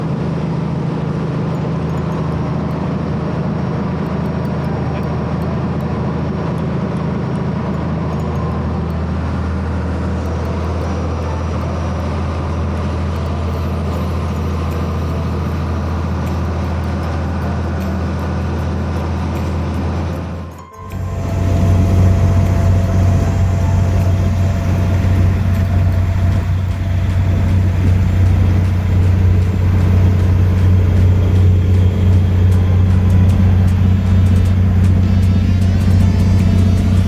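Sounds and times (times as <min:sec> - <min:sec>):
boat engine drone: 0:00.0 - 0:37.0
water wash: 0:20.9 - 0:37.0.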